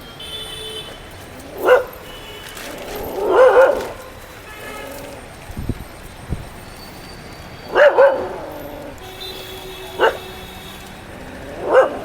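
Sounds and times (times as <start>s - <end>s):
dog barking: 1.5s - 2.2s, 2.8s - 4.2s, 7.7s - 8.9s, 9.8s - 10.4s, 11.5s - 12.0s.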